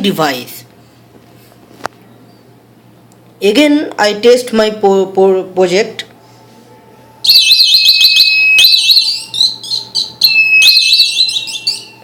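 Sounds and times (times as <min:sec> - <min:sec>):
electronic alarm siren warbling: 0:07.2 - 0:12.0.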